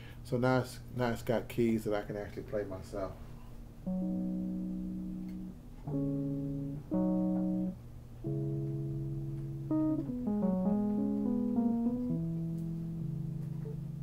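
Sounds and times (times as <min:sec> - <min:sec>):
electric piano chords and notes: 0:03.8 - 0:14.0.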